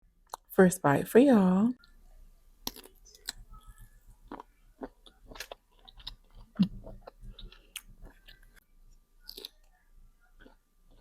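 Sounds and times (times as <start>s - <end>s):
person chewing: 2.6s - 8.6s, 9.2s - 11.0s.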